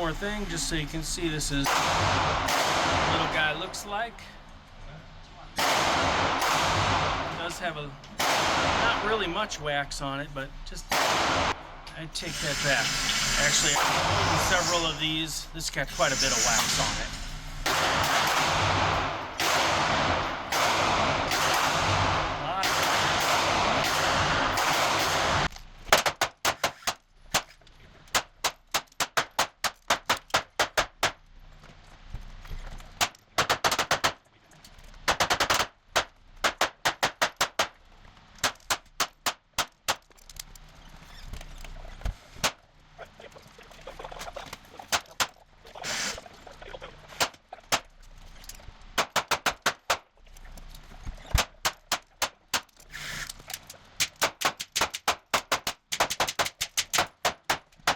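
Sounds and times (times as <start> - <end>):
rifle shots: 1.6 - 3.6, 5.6 - 7.5, 8.2 - 9.3, 10.9 - 11.6, 16.8 - 27.0, 33.0 - 34.2, 35.1 - 37.7.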